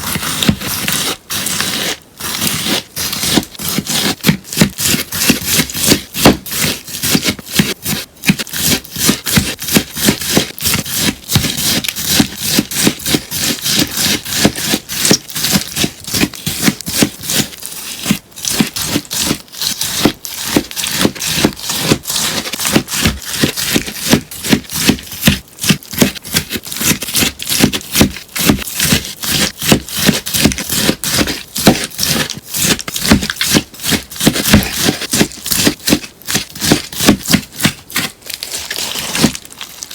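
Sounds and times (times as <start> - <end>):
scissors snipping sponge: 0.0 - 39.9.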